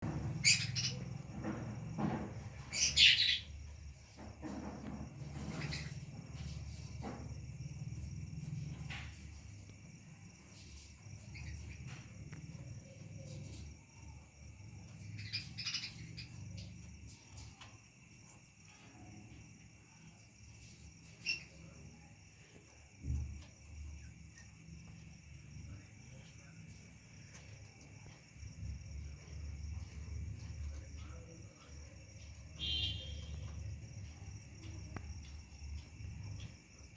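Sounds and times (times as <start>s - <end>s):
finches chirping: 0.0s - 1.4s, 2.5s - 4.0s, 10.4s - 17.1s.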